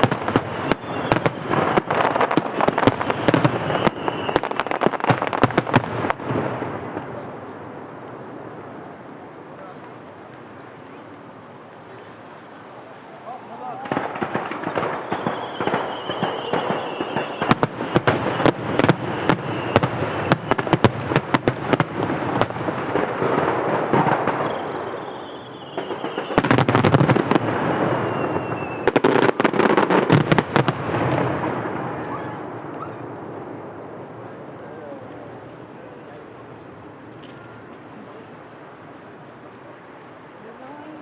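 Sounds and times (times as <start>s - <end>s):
firework whistle falling: 0.0s - 5.9s, 13.8s - 33.2s
fireworks bangs and crackle: 0.0s - 41.0s.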